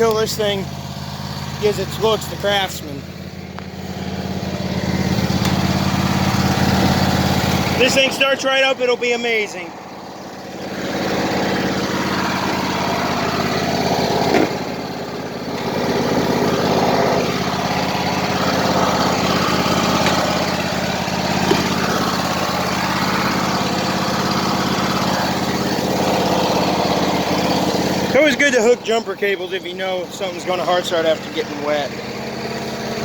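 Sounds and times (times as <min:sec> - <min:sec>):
small gasoline engine running: 0:00.0 - 0:33.0
sharp engine knock: 0:10.7 - 0:14.9, 0:15.5 - 0:28.1.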